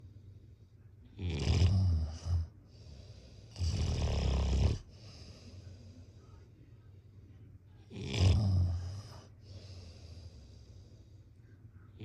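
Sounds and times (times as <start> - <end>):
faint breathing: 0.0 - 1.2, 2.0 - 3.9, 4.7 - 7.8, 8.6 - 12.0
person snoring: 3.6 - 4.8, 7.9 - 8.9.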